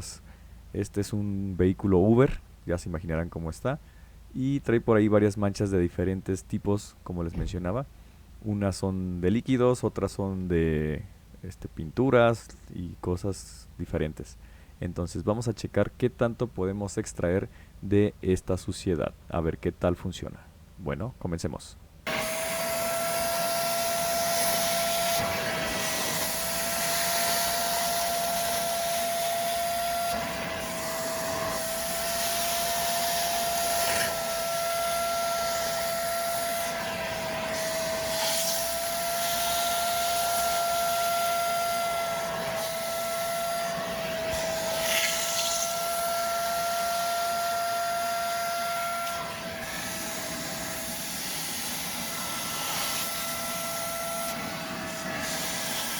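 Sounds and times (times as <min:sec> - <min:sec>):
suction motor high whine: 0:22.1 - 0:55.9.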